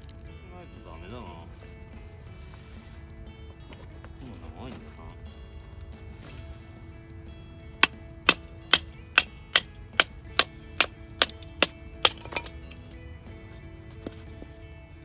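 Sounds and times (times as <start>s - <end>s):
background music: 0.0s - 15.0s
firewood chopping knocks: 7.8s - 12.7s.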